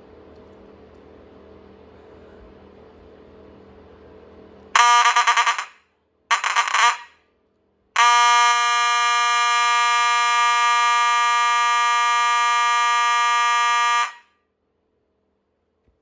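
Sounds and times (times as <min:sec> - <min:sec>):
fire alarm horn buzzing: 0:04.8 - 0:07.2, 0:08.0 - 0:14.4.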